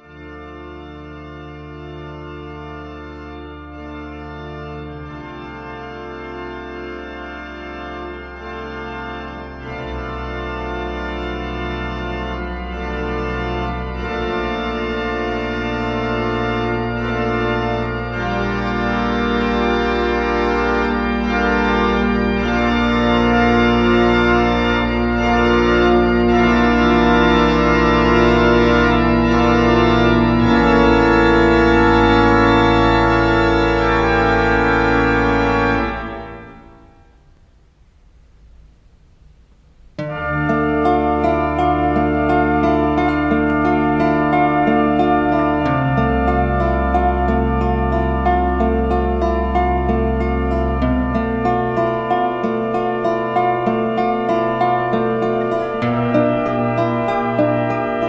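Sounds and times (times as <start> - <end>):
slow held chords music: 0.0 - 58.0
deep bass note: 40.0 - 58.0.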